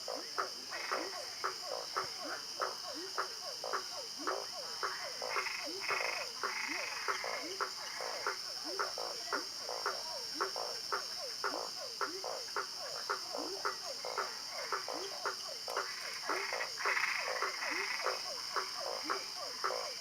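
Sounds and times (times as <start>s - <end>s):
frogs croaking: 0.0s - 20.0s.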